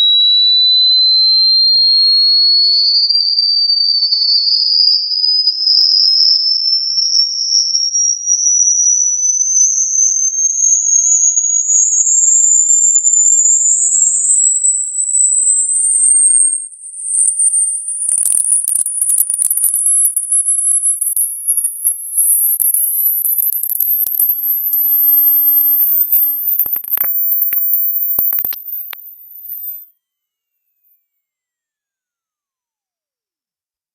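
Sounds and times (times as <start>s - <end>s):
electronic test tone sweeping upward: 15.0s - 29.9s
faint crackling clicks: 17.9s - 29.9s.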